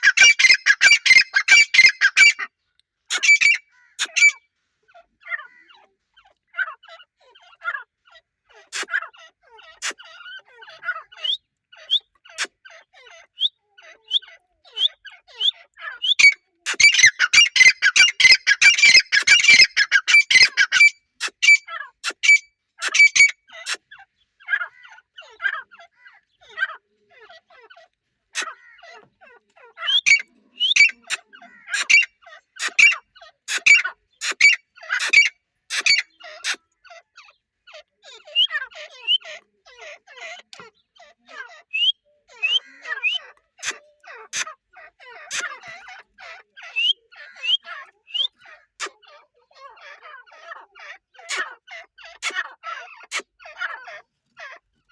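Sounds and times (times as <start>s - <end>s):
francolins squawking calls: 0.0s - 2.5s, 3.1s - 4.4s, 14.1s - 23.9s, 29.7s - 39.4s, 40.1s - 48.9s.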